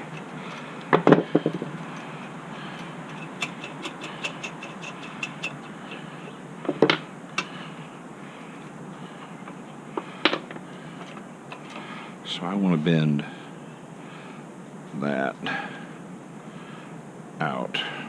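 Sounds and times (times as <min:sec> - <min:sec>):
metal tools clinking: 0:01.6 - 0:06.1.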